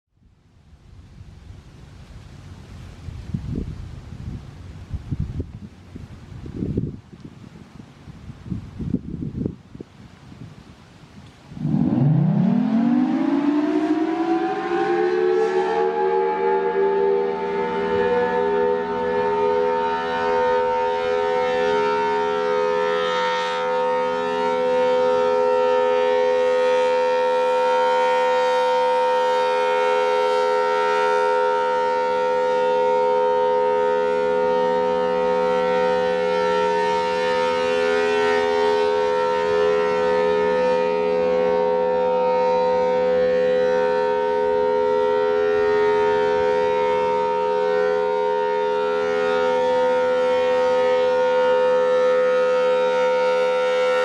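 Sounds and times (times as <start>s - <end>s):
warning siren steady chord: 11.5s - 54.0s.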